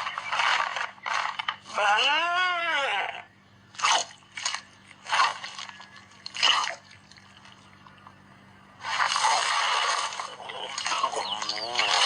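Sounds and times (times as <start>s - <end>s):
cartoon crunching sounds: 0.0s - 7.0s, 8.8s - 12.0s.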